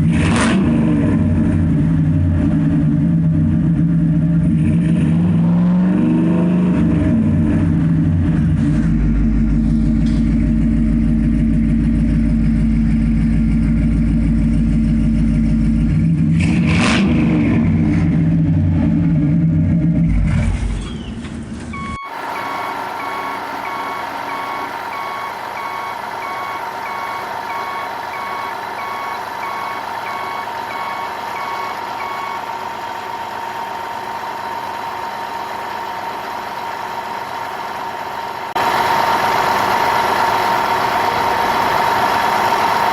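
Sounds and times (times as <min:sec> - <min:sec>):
heavy vehicle engine rumbling: 0:06.6 - 0:16.6, 0:17.4 - 0:42.9
reversing alarm beeping: 0:21.7 - 0:32.6.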